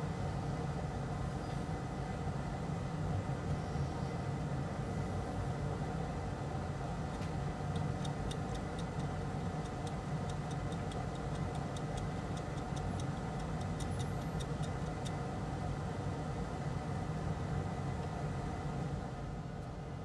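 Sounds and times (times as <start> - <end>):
mechanical equipment hum: 6.7 - 20.0
light sharp ticks: 7.1 - 15.2.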